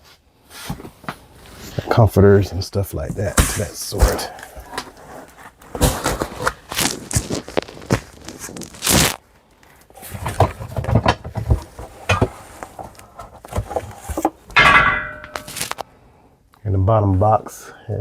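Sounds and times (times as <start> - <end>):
boxes and bags rustling: 3.0 - 15.8.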